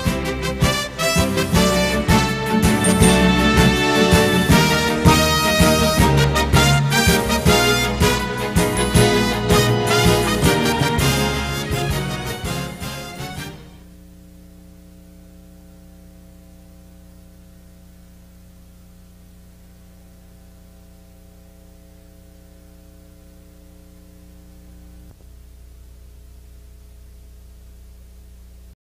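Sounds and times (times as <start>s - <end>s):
electrical mains hum: 12.0s - 28.8s.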